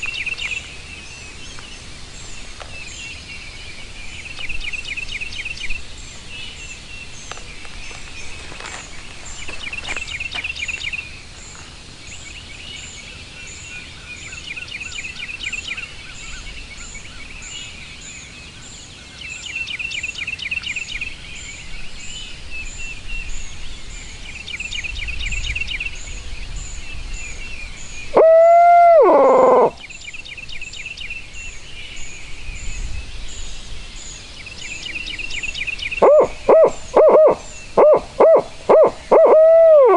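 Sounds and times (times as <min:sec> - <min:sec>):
songbirds singing: 0:00.0 - 0:39.9
owl-like hoot: 0:28.1 - 0:29.8, 0:36.0 - 0:39.9.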